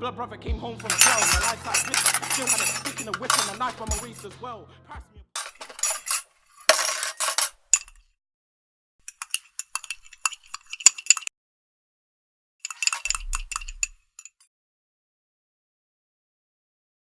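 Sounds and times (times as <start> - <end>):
hard objects clattering: 0.8 - 4.3, 5.4 - 8.0, 9.1 - 11.3, 12.7 - 14.4
hard objects clinking: 0.8 - 4.3, 5.4 - 8.0, 9.1 - 11.3, 12.7 - 14.4.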